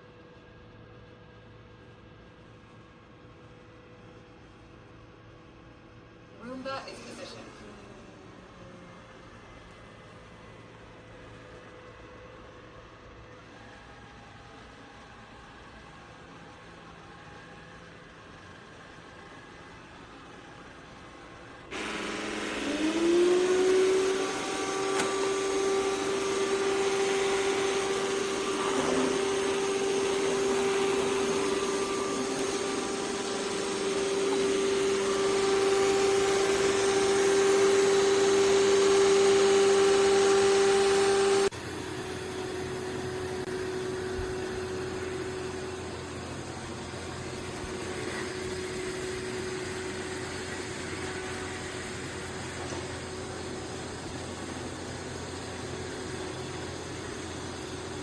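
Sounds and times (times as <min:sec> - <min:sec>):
suction noise: 0:21.7 - 0:41.5
robot vacuum motor humming: 0:21.7 - 0:58.0.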